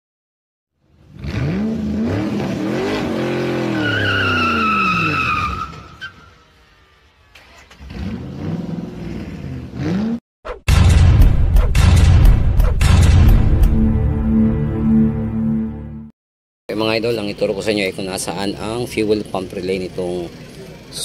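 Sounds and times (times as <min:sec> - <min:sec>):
car engine revving: 0:00.8 - 0:10.2
tyre squeal: 0:03.6 - 0:06.5.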